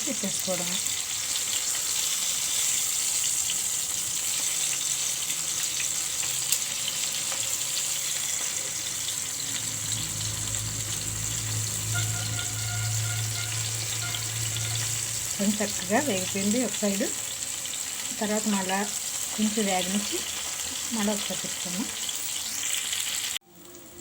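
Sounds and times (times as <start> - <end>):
vegetables sizzling in hot oil: 0.0 - 24.0
low hum: 8.8 - 16.4.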